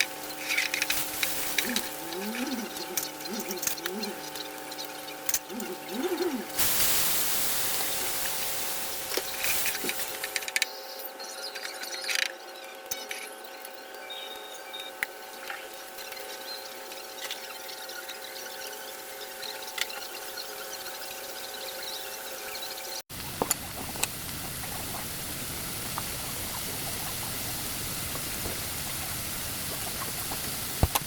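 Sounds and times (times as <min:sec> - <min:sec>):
food sizzling in oil: 0:00.0 - 0:10.5, 0:23.1 - 0:31.0
steady hum: 0:00.0 - 0:11.2, 0:23.1 - 0:31.0.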